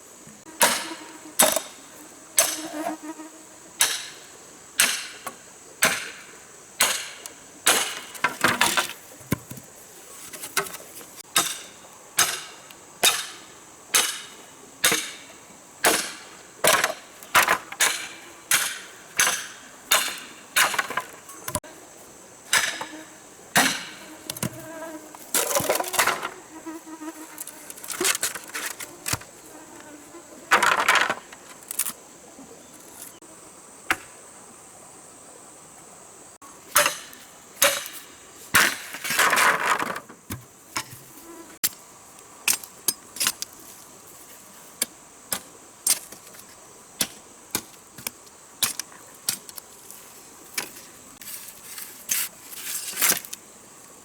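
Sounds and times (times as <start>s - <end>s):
hand tool striking material: 0.6s - 1.7s, 11.4s - 13.4s, 22.5s - 22.9s, 36.8s - 39.5s.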